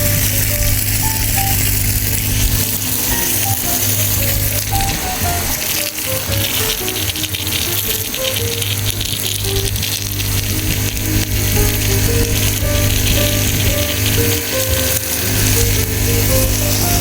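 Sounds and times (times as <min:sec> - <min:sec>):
background music melody: 0:00.0 - 0:17.0
steady hiss: 0:00.0 - 0:17.0.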